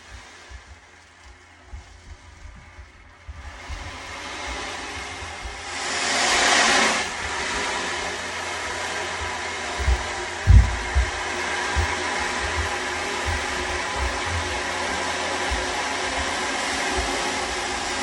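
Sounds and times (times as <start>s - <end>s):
ocean drum beads washing: 0.0s - 18.0s
steady hiss: 0.0s - 18.0s
children running upstairs: 8.8s - 18.0s.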